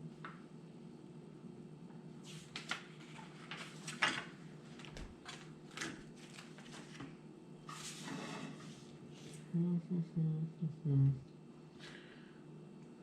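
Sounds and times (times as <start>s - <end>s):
low room hum: 0.0s - 13.0s
plastic packaging rustling: 2.6s - 7.1s.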